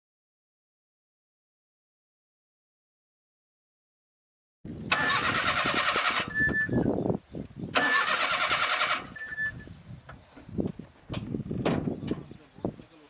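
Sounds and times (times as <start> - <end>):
car starter cranking: 4.9 - 6.6, 7.7 - 9.4.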